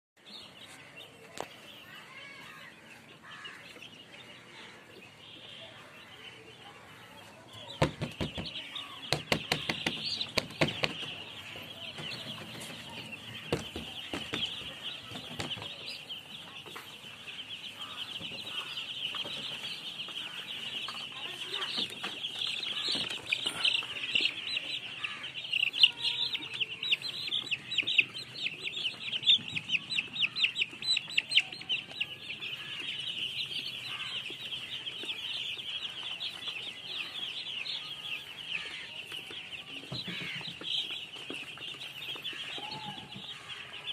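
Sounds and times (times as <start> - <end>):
baby chicks cheeping: 0.2 - 43.9
sharp knocks: 7.8 - 11.2, 13.4 - 15.8.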